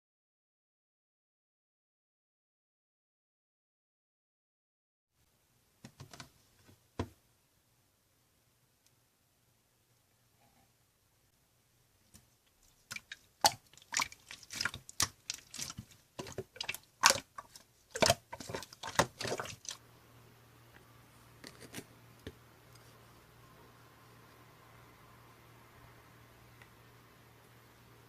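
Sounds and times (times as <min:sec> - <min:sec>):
slime squished by hand: 0:12.9 - 0:19.8.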